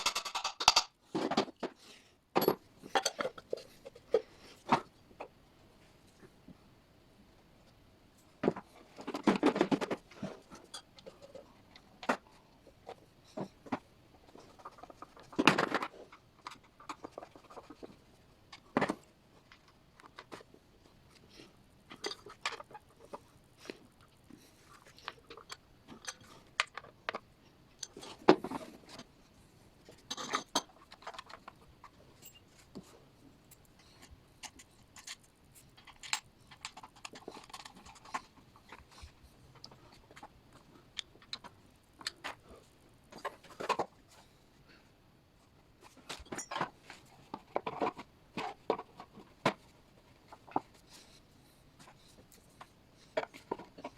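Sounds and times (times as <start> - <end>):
parts and tools clicking and clunking: 0.0 - 5.4, 7.6 - 29.2, 29.8 - 44.3, 45.5 - 53.9.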